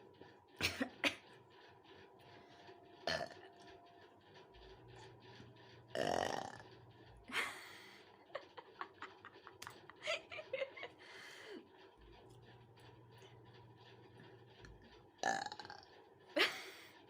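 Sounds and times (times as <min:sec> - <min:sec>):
woman burping: 0:03.1 - 0:03.4.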